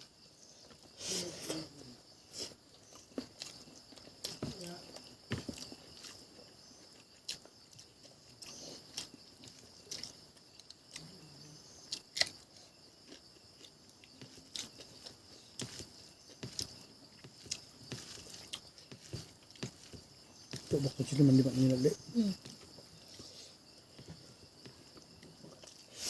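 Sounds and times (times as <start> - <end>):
close chewing and biting: 2.3 - 21.8, 22.4 - 26.0
sharp clicks and small crunches: 11.9 - 12.4.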